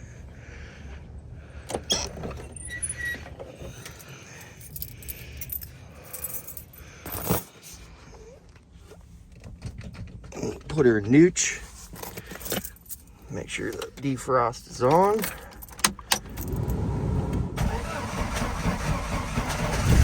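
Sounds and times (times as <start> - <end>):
keys jangling: 1.9 - 7.8, 12.0 - 14.0, 14.9 - 16.7.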